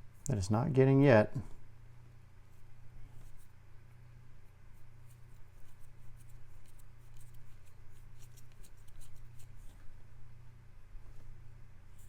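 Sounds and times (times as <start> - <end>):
steady low hum: 0.0 - 12.0
cleaning pen scratching plastic: 4.9 - 9.7.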